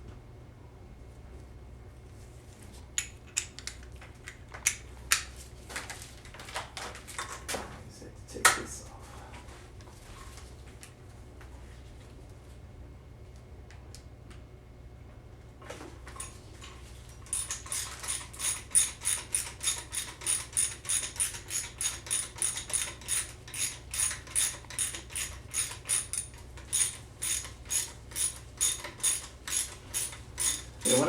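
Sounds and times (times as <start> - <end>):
hand ratchet clicking: 17.3 - 31.0.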